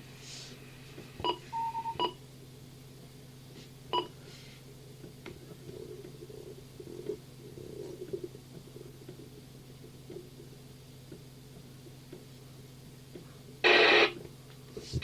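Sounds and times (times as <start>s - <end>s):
low steady hum: 0.0s - 15.0s
electronic radio beeps: 13.6s - 14.2s.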